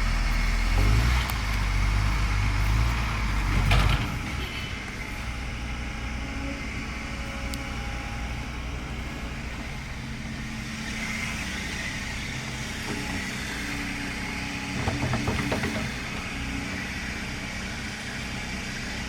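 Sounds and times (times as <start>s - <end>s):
heavy diesel engine running: 0.0s - 19.0s
knocks: 14.8s - 16.1s.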